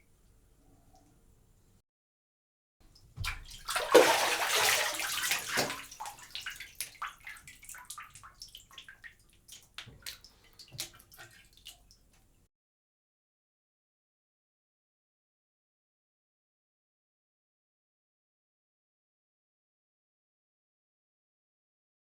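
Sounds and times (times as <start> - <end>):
water drips: 2.9 - 12.4
water sloshing in bathtub: 2.9 - 12.4
water streaming into tub: 3.0 - 11.7.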